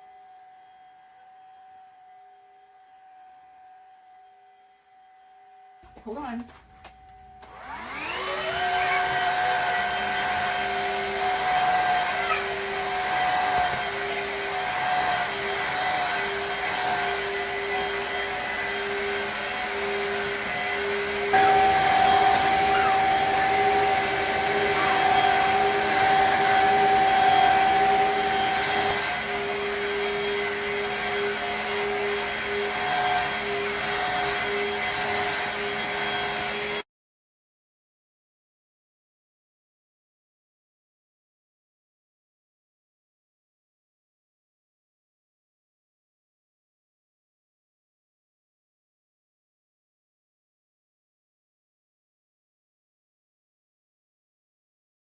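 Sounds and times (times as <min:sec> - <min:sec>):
vacuum mop motor whining: 0:00.0 - 0:36.8.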